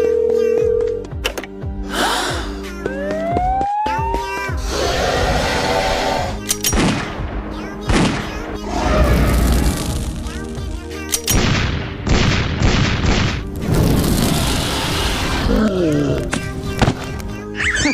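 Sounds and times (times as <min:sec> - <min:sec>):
background music: 0:00.0 - 0:17.9
booms and crashes: 0:06.8 - 0:10.6, 0:11.4 - 0:15.4.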